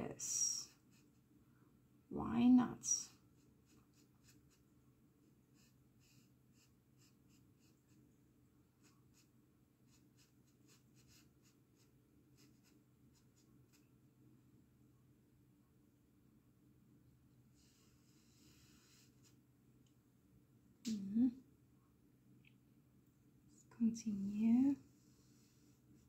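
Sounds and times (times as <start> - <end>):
brush dabbing paint on canvas: 2.8 - 8.2, 8.8 - 13.9, 17.6 - 19.4.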